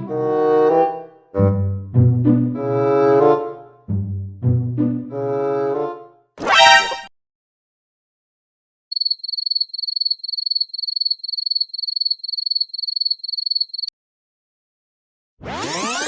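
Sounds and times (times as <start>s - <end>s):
cricket chirping: 8.9s - 13.9s.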